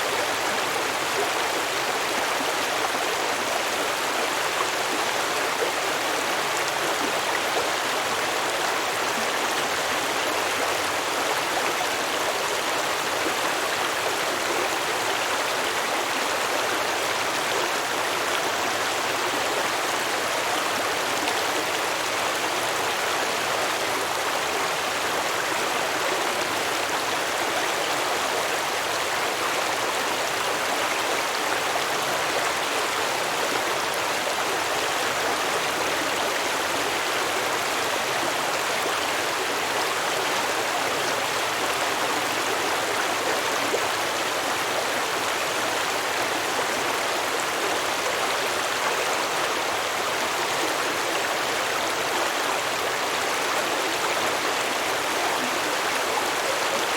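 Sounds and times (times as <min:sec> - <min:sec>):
stream babbling over rocks: 0:00.0 - 0:56.9.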